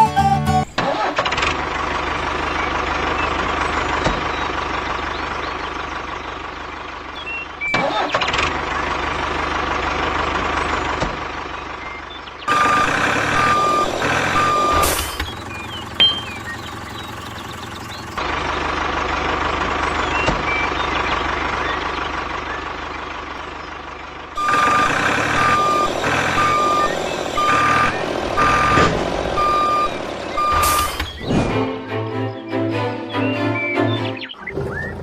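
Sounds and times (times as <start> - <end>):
engine running steadily: 0.0 - 32.1
reversing alarm beeps: 11.9 - 14.9, 16.0 - 16.6, 24.4 - 31.2.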